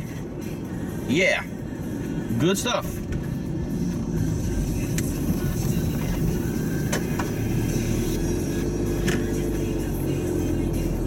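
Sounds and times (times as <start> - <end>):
car road and engine rumble: 0.0 - 11.0.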